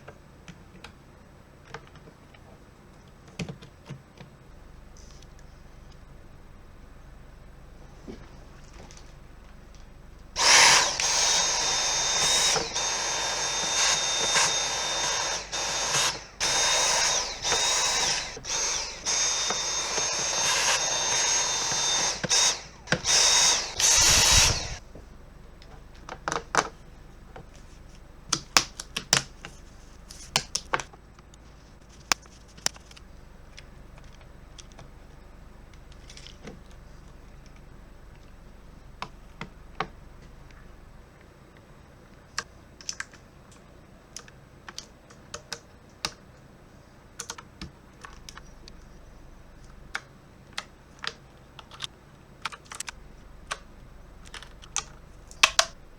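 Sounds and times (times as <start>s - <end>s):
power tool whining: 10.4s - 24.8s
sharp clicks: 10.4s - 24.8s, 49.6s - 55.8s.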